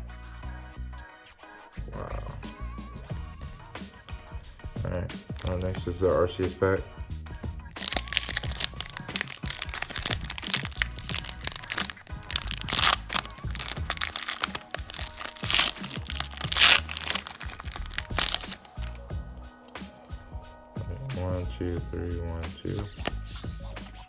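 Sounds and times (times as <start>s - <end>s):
foil wrapper crinkling and tearing: 5.3s - 5.8s, 7.8s - 19.0s.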